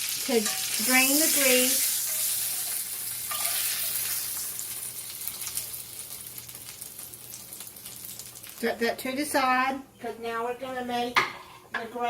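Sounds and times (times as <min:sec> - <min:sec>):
steaks sizzling in a skillet: 0:00.0 - 0:08.8.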